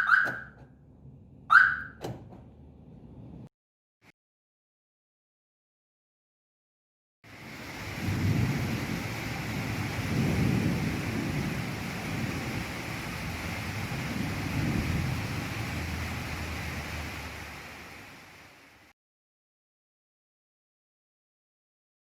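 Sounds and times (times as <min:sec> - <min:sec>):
rain hissing: 0:07.3 - 0:18.9
thunder rumbling: 0:07.4 - 0:17.6.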